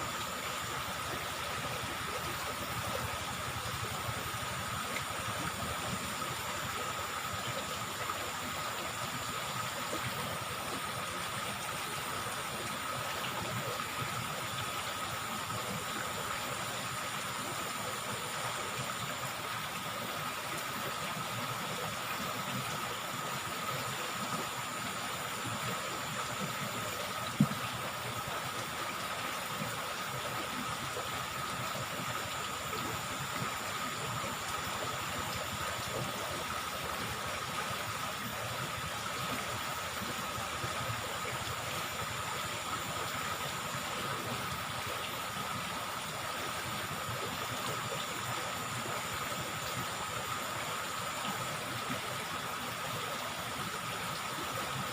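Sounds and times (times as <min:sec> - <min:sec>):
river water flowing: 0:00.0 - 0:54.9.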